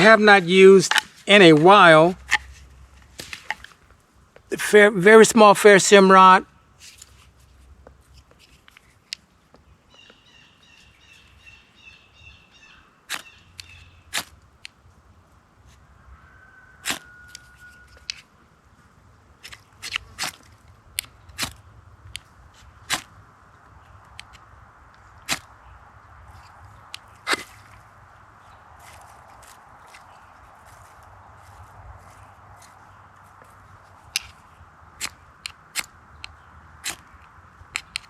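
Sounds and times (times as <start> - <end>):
bird chirping: 9.6 - 14.1
knife scraping ferrocerium rod: 16.8 - 18.2, 36.8 - 37.1.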